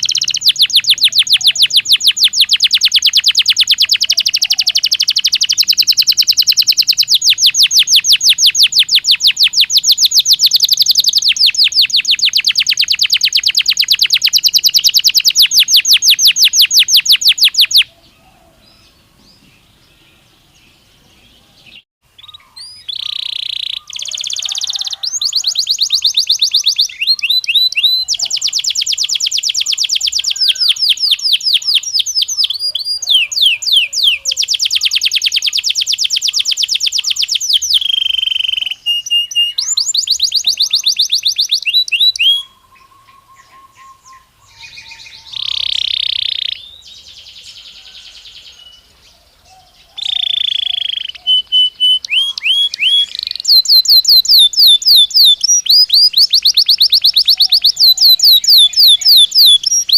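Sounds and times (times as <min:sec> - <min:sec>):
canary trilling: 0:00.0 - 0:18.0, 0:21.7 - 0:46.7, 0:49.9 - 0:59.9
canary whistled notes: 0:37.4 - 0:46.5, 0:50.0 - 0:59.9.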